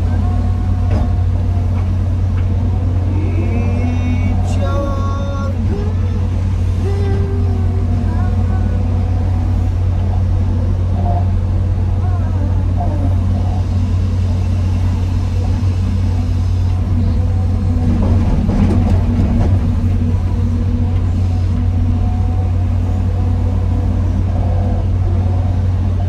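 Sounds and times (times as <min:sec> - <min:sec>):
excavator diesel engine running: 0:00.0 - 0:26.0
rattling and knocking: 0:14.8 - 0:22.0.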